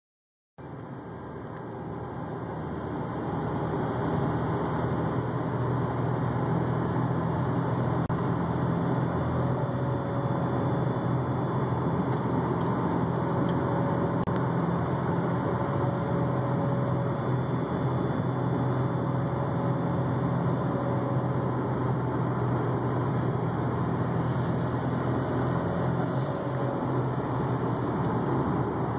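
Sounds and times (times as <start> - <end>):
car whining hum: 0.6 - 28.9
faint higher whine: 0.6 - 28.9.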